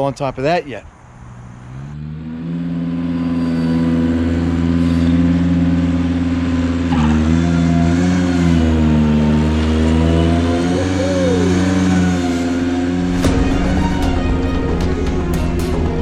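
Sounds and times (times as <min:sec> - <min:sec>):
tractor engine revving: 0:01.1 - 0:16.0.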